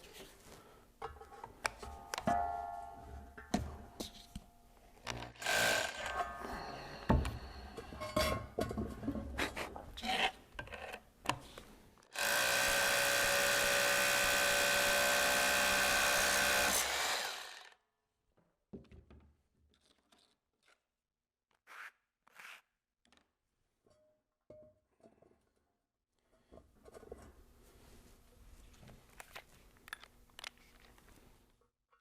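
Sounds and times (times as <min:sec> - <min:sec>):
hammer drill boring into stone: 0:05.1 - 0:07.1, 0:12.2 - 0:17.8.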